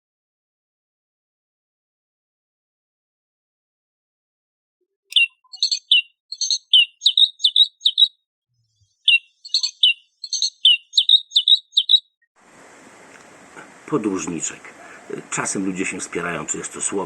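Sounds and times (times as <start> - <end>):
toy bird chirps and whistles: 5.1 - 8.2, 9.1 - 12.1.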